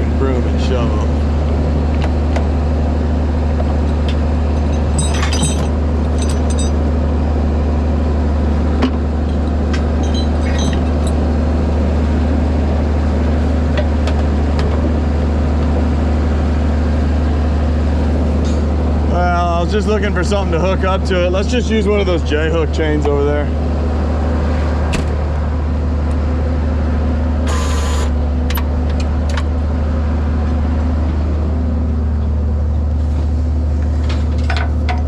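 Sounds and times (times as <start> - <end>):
truck engine idling: 0.0 - 35.0.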